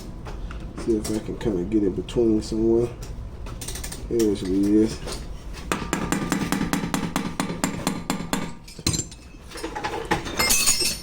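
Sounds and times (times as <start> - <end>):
tool tapping metal: 5.7 - 9.2.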